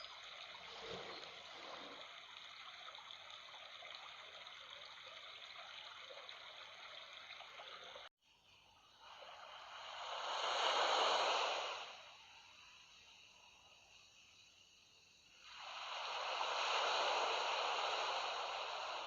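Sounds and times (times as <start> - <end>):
rush of water: 0.0 - 8.1, 9.0 - 12.3, 15.4 - 19.0
water trickling and babbling: 0.0 - 10.2.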